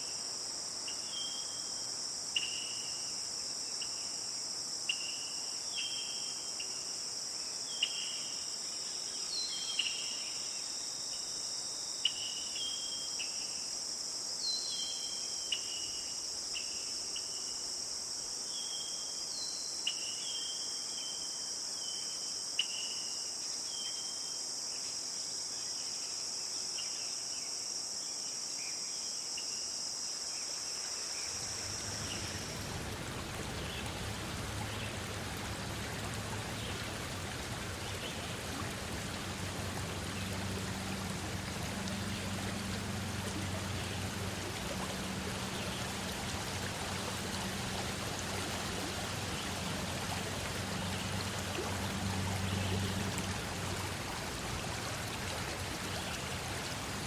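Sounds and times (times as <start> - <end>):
insects chirring: 0.0 - 57.0
falling water hiss: 30.6 - 57.0.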